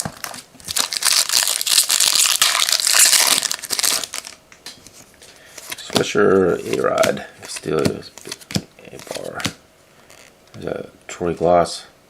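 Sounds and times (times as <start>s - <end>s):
plastic wrapper crinkling: 0.0s - 4.4s.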